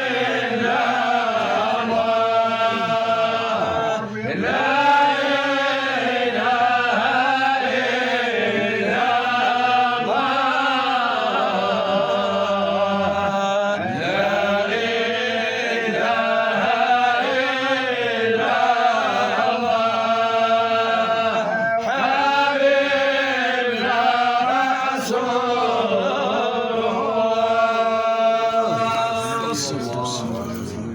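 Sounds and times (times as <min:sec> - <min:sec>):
man chanting: 0:23.4 - 0:30.9.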